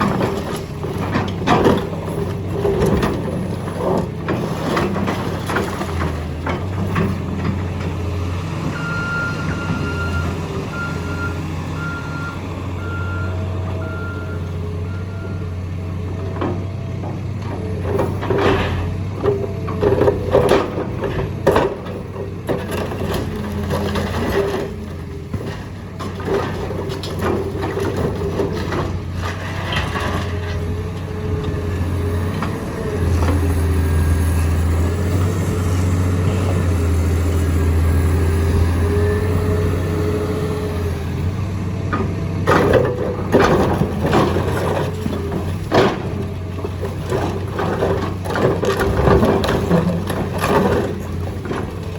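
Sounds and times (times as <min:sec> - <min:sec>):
excavator engine and hydraulics whine: 0:00.0 - 0:51.9
concrete cracking and crunching: 0:42.0 - 0:51.9.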